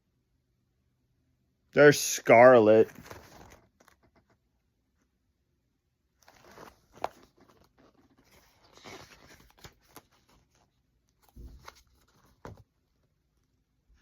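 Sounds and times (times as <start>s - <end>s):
book pages turning: 2.7s - 4.4s, 6.2s - 13.1s.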